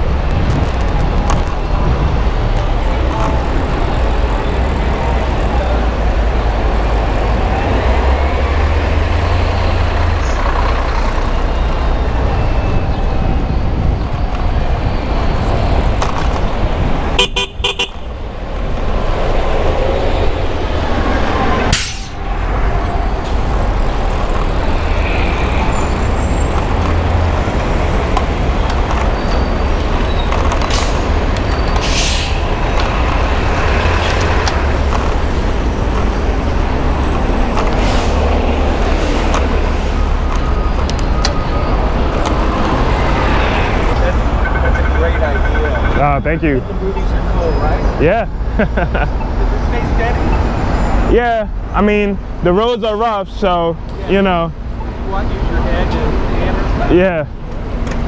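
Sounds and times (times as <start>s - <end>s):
wind and road noise: 0.0s - 58.0s
car horn honking: 17.2s - 18.1s.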